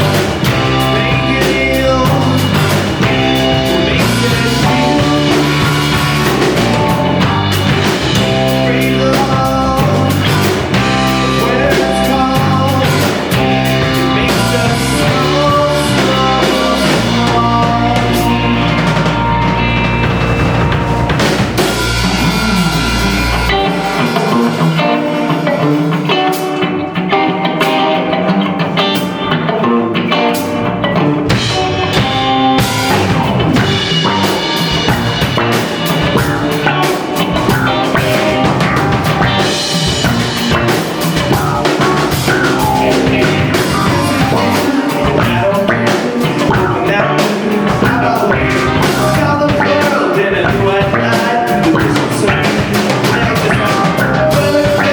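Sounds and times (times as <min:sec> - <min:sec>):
live rock band playing: 0:00.0 - 0:54.9.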